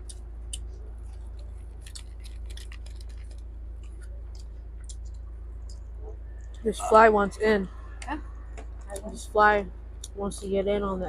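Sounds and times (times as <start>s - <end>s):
chewing with clicks and smacks: 0.0s - 6.7s
steady low hum: 0.0s - 11.0s.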